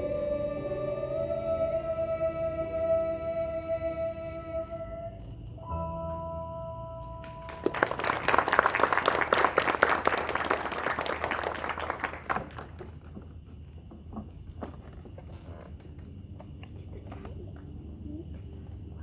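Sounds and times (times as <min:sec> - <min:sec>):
audience clapping: 0:07.2 - 0:13.0.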